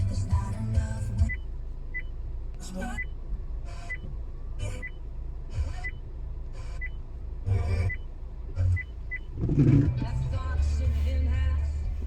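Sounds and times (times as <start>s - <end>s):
low car rumble: 0.0s - 12.0s
radio static bursts: 9.3s - 10.2s.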